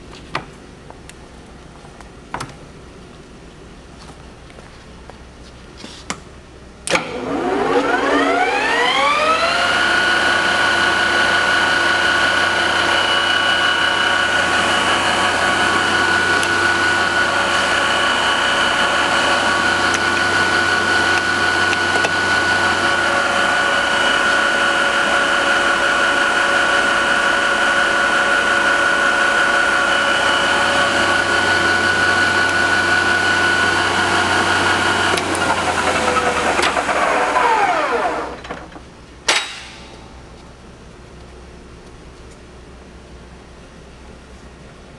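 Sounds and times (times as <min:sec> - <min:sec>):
metal lathe gear whine: 0:07.1 - 0:38.5
lathe switch clack: 0:39.3 - 0:40.0.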